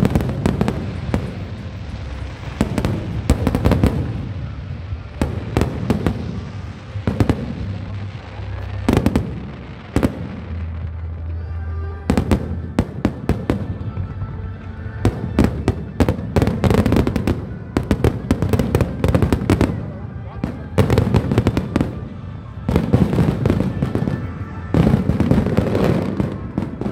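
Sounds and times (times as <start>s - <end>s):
fireworks bangs and crackles: 0.0s - 26.9s
music playing: 0.0s - 26.9s.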